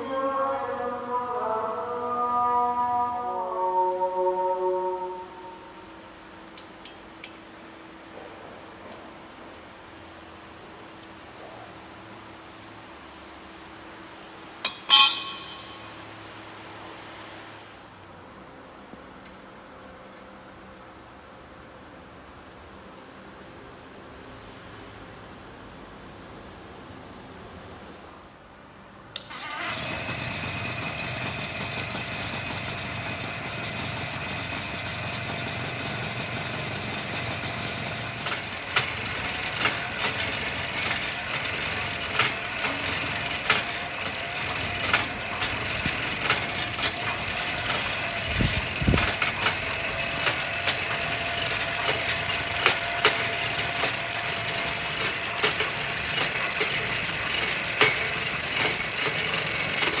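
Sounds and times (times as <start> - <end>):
hissing rattling with sharp clicks: 29.2 - 60.0
machine motor humming: 29.6 - 60.0.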